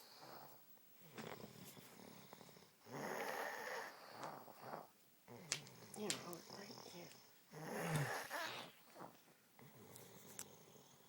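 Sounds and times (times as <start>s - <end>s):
woman snoring: 1.1s - 9.2s.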